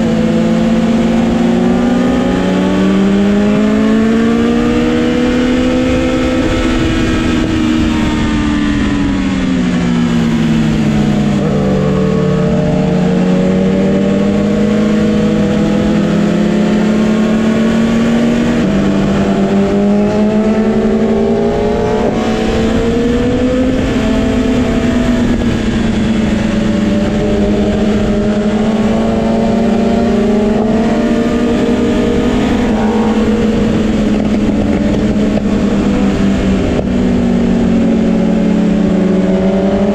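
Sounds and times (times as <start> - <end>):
motorcycle engine accelerating: 0.0 - 39.9
wind rushing: 29.6 - 36.6.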